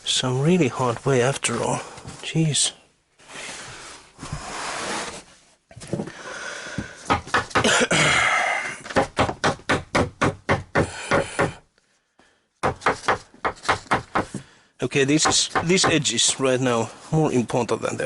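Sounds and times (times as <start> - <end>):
board scraping and rustling: 3.2 - 6.2
rapid knocks on board: 7.1 - 7.7, 8.9 - 11.6, 12.6 - 14.4, 15.2 - 16.1.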